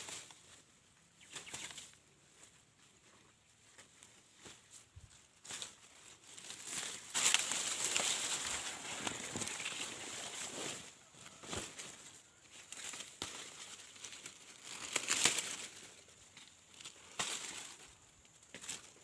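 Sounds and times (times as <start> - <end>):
dry corn leaves rustling: 0.0 - 19.0
sharp crackles: 1.2 - 1.9, 6.3 - 19.0.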